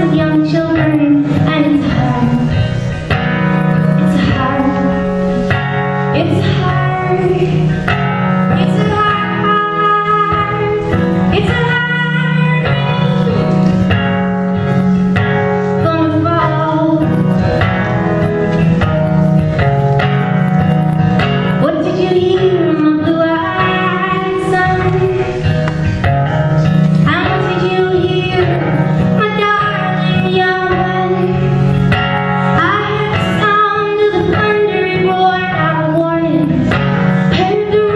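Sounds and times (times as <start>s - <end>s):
woman singing: 0.0s - 2.6s, 4.0s - 5.1s, 6.1s - 7.8s, 8.5s - 13.6s, 15.8s - 17.4s, 21.6s - 25.4s, 27.0s - 31.4s, 32.6s - 37.9s
acoustic guitar chords: 0.0s - 37.9s.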